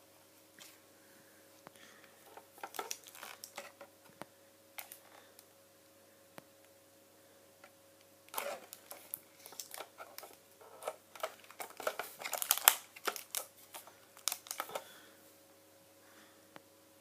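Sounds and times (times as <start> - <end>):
objects clicking and knocking: 8.4 - 14.8.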